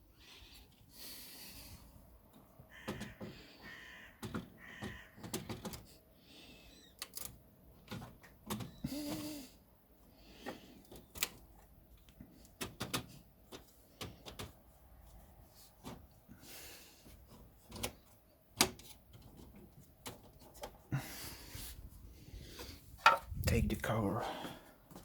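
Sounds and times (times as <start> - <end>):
plastic and metal parts clicking: 6.8 - 8.8.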